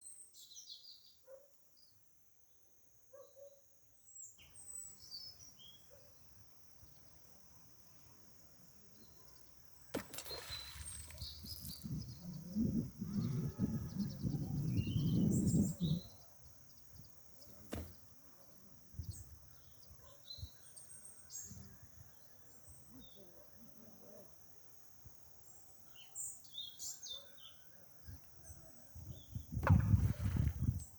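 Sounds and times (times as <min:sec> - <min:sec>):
birds chirping: 0:09.1 - 0:18.0.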